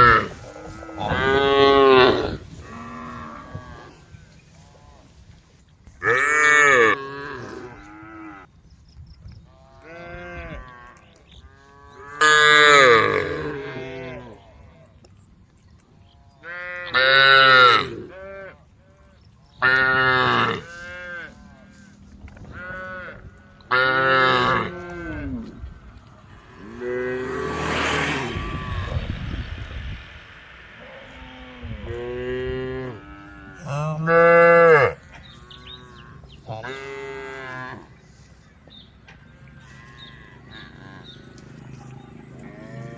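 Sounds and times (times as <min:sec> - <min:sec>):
cow mooing loudly: 0:22.5 - 0:25.6, 0:26.4 - 0:28.4, 0:32.3 - 0:37.9
herd of cows mooing softly: 0:31.9 - 0:38.0.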